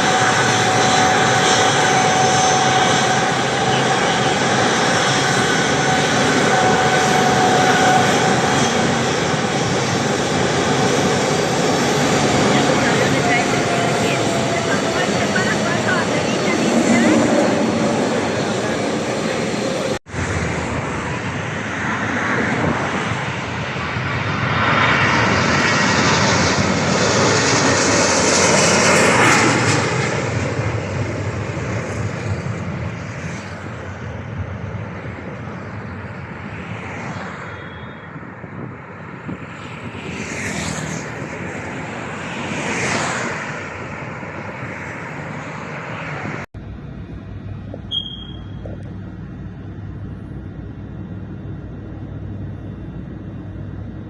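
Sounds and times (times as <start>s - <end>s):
airliner engines roaring: 0.0s - 54.0s.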